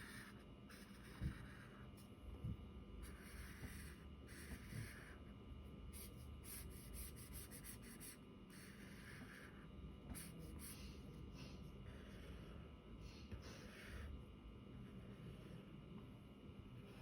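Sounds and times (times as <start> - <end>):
pen scratching on paper: 0.0 - 1.9, 3.0 - 5.3, 5.9 - 12.6, 13.3 - 14.1, 14.7 - 15.7.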